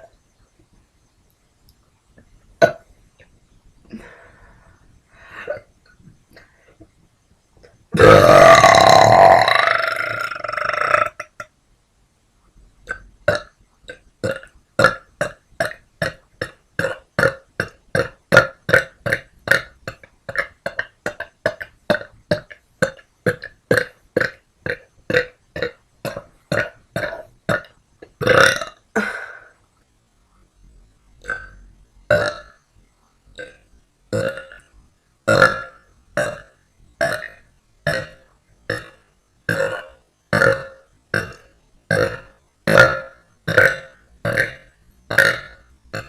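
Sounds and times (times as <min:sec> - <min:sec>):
person burping: 0:02.6 - 0:02.9, 0:05.3 - 0:05.7, 0:08.0 - 0:11.5, 0:12.9 - 0:29.5, 0:31.2 - 0:32.5, 0:34.2 - 0:34.6, 0:35.3 - 0:36.4, 0:37.0 - 0:46.0.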